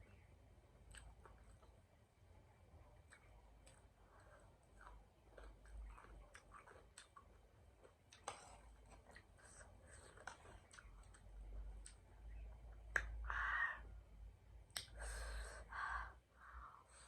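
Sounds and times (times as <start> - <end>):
mouth clicks and smacks: 0.8 - 1.8, 3.0 - 4.0, 4.6 - 13.5, 14.7 - 15.0
quiet chewing: 0.8 - 2.0, 2.7 - 13.2.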